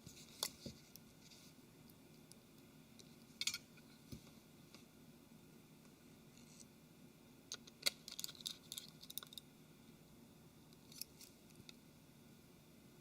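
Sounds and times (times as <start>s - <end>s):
small tools clicking and tapping: 7.5s - 9.5s.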